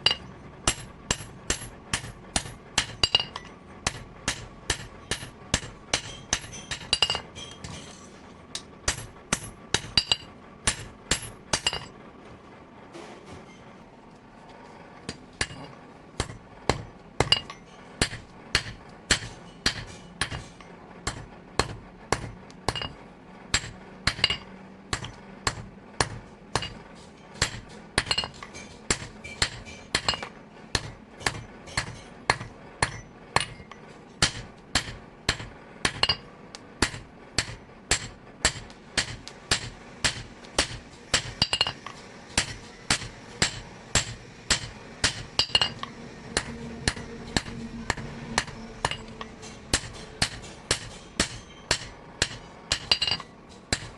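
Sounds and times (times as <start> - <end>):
hammer striking steel on anvil: 0.0 - 8.0, 8.6 - 11.9, 15.1 - 53.9.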